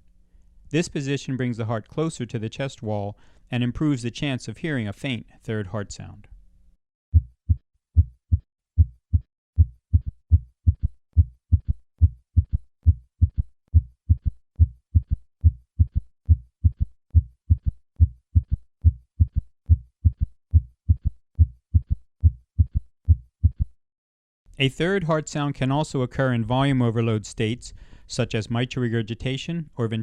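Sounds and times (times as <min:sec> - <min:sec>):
heartbeat gallop rhythm: 0:07.1 - 0:23.8.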